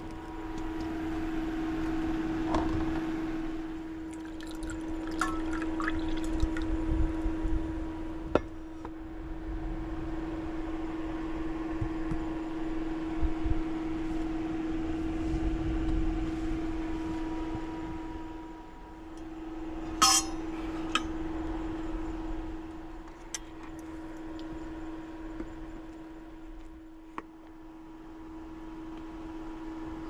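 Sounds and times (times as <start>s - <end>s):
steady hum: 0.0s - 30.0s
drink being poured: 4.1s - 6.7s.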